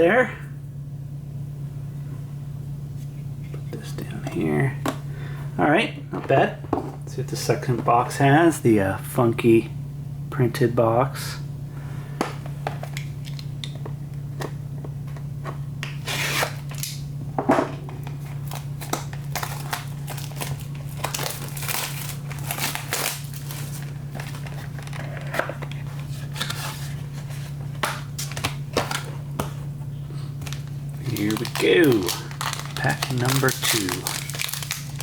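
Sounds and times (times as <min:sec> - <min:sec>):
steady low hum: 0:00.0 - 0:35.0
packaging tearing and rustling: 0:15.8 - 0:17.0, 0:17.9 - 0:29.5, 0:30.3 - 0:35.0.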